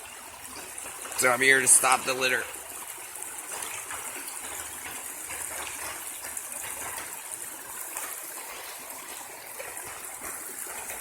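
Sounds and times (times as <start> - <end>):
small stream running: 0.0 - 11.0.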